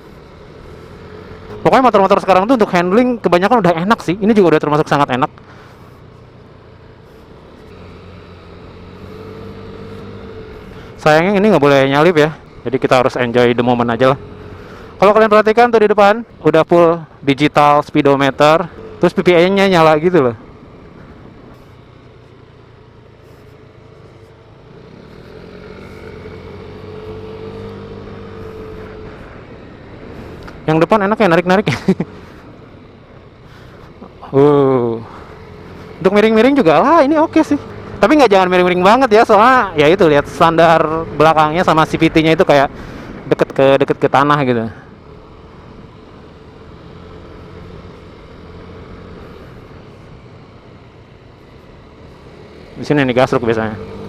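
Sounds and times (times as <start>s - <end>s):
road and wind noise: 0.0s - 54.0s
scooter engine running: 5.4s - 15.4s, 18.0s - 43.7s, 44.8s - 54.0s.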